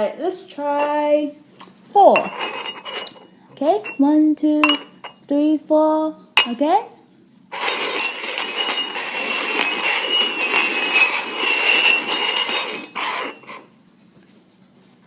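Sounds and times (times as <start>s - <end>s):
containers scraping across surface: 2.2s - 5.2s, 7.5s - 13.7s.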